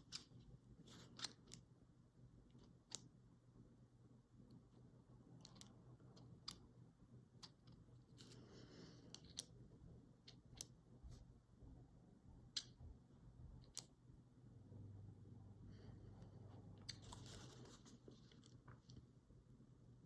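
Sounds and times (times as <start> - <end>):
faint clicks and taps of handling: 16.6 - 19.1.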